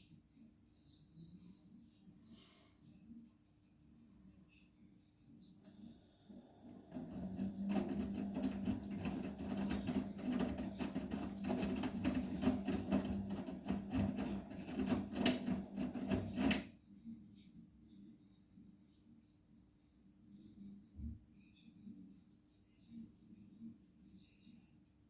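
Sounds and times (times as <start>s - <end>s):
washing machine motor hum: 5.6s - 16.7s
tumbling load clattering: 6.5s - 16.6s.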